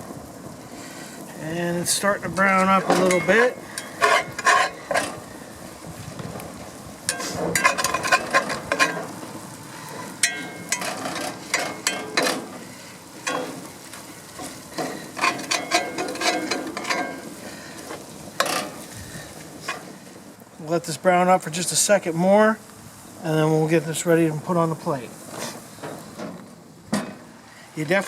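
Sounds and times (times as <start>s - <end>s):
utensil scraping a pan: 2.5s - 5.4s, 7.1s - 9.2s, 9.8s - 20.0s.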